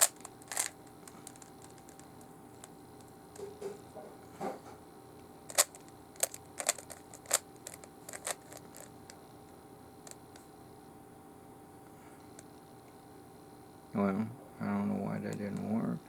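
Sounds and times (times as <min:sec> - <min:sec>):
puzzle cube clicking: 0:00.0 - 0:02.0, 0:05.5 - 0:08.9.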